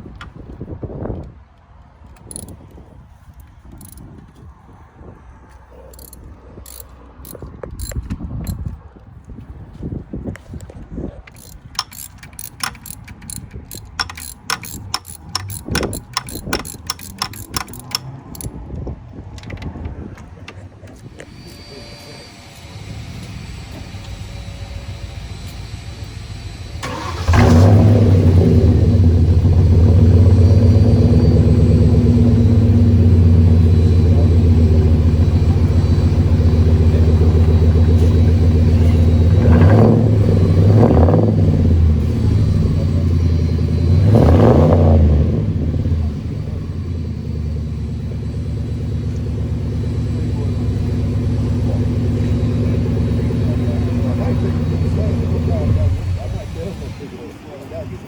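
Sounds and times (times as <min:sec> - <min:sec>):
car engine starting and idling: 0:02.2 - 0:02.6, 0:10.6 - 0:58.0
car engine revving: 0:20.2 - 0:58.0.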